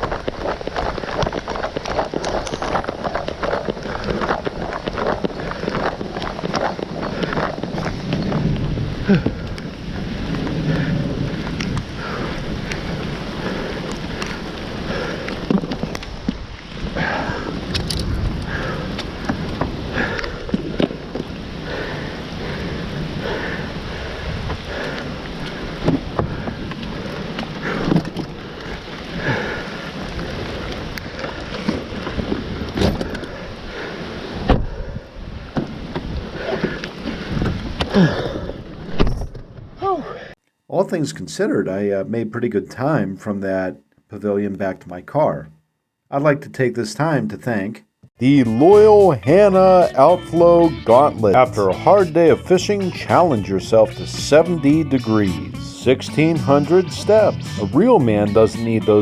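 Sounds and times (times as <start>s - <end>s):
wind: 0.0s - 40.4s.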